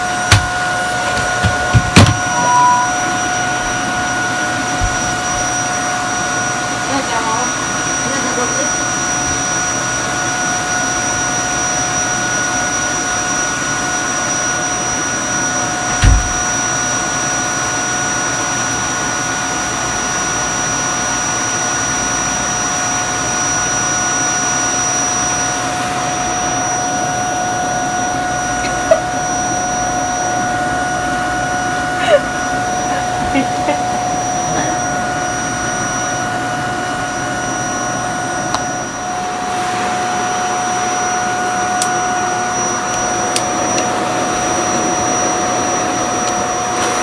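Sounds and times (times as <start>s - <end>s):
vacuum cleaner whining: 0.0s - 47.0s
loud thump: 0.3s - 2.9s, 16.0s - 16.4s.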